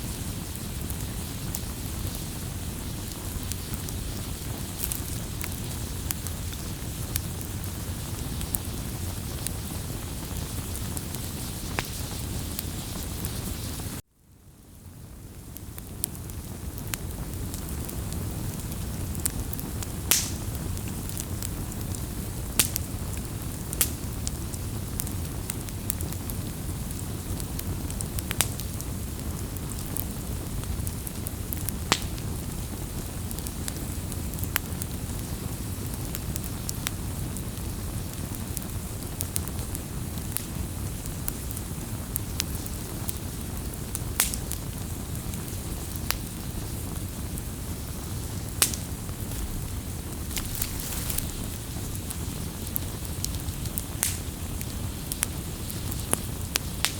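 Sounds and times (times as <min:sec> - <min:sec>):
campfire flame rumble: 0:00.0 - 0:56.9
fire crackles and pops: 0:00.0 - 0:56.9
loud fire snaps: 0:00.1 - 0:14.0, 0:15.2 - 0:56.9.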